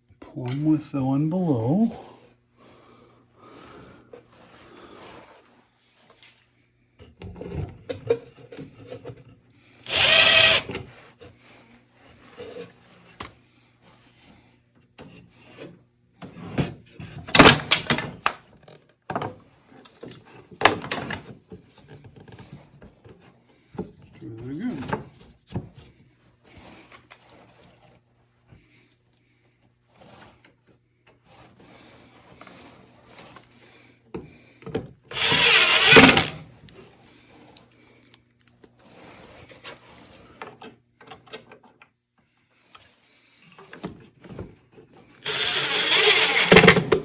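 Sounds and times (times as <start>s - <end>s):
power drill drilling into wood: 9.8s - 10.8s, 35.1s - 36.4s, 45.2s - 47.0s.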